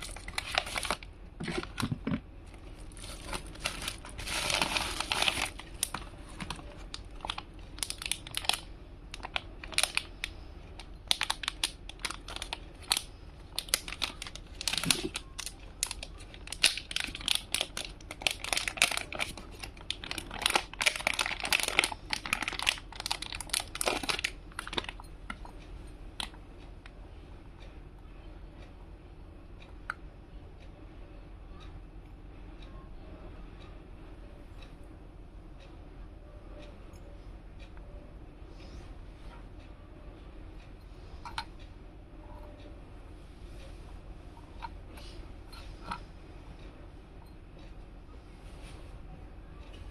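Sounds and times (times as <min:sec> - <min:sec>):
plastic packaging crinkling: 0:00.0 - 0:25.1.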